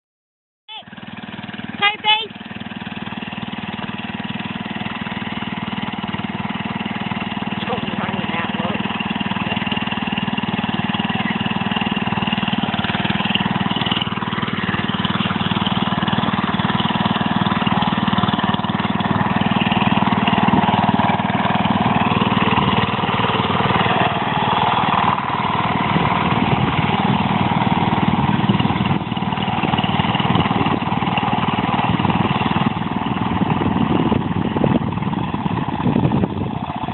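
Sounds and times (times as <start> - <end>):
garden tractor engine running: 0.7 - 36.9.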